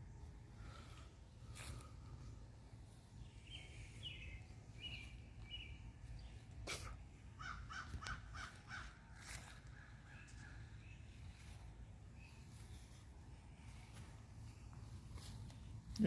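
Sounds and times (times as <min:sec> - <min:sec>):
birds calling: 0:03.0 - 0:15.8.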